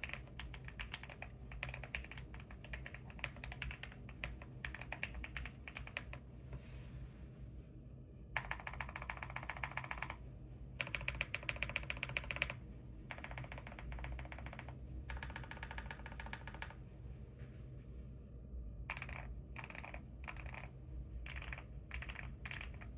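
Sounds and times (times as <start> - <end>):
mechanical keyboard typing: 0.0 - 6.2, 8.4 - 10.2, 10.8 - 16.8, 18.9 - 22.9.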